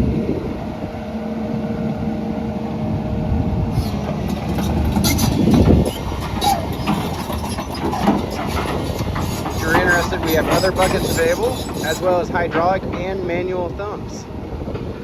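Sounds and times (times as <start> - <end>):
excavator diesel engine running: 0.0 - 14.6
metallic clanks and knocks: 3.8 - 13.2.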